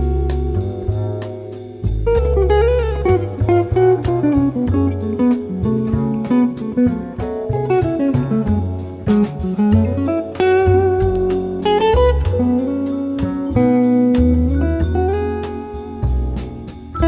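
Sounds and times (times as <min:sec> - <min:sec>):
instrumental background music: 0:00.0 - 0:17.0.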